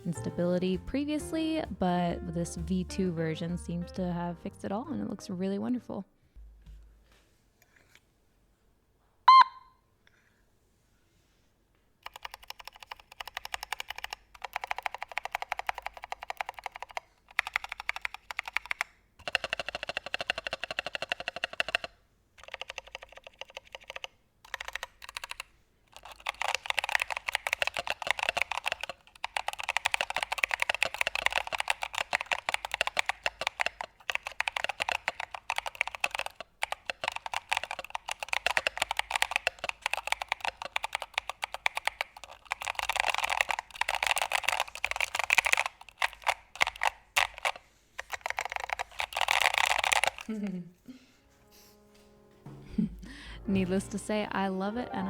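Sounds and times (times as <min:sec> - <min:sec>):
mechanical keyboard typing: 0:12.0 - 0:50.3.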